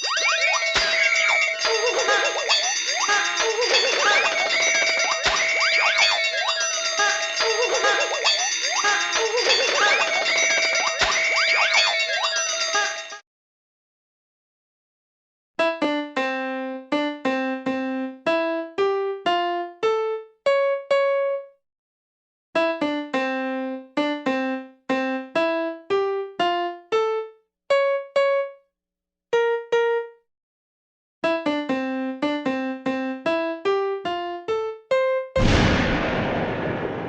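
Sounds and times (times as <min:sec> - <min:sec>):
electric piano melody: 0:15.6 - 0:21.5, 0:22.6 - 0:28.6, 0:29.4 - 0:30.2, 0:31.2 - 0:35.4.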